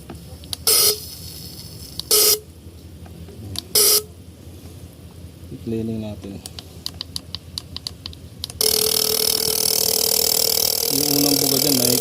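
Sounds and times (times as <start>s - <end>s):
fuel injectors spraying: 7.7s - 12.0s.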